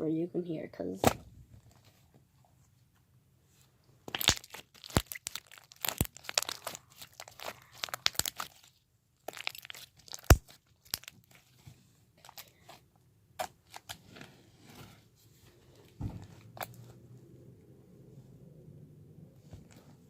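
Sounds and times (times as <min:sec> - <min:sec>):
slime being squished by hand: 0:04.1 - 0:11.4.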